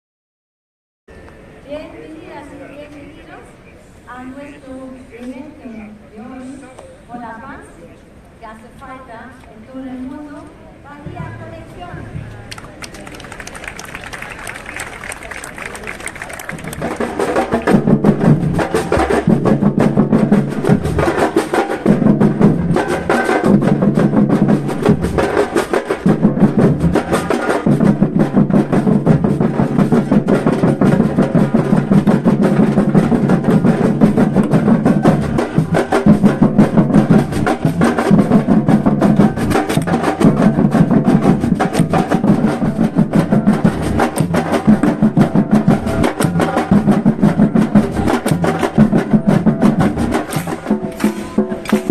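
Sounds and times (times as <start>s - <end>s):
fast drum rhythm: 11.1s - 51.9s.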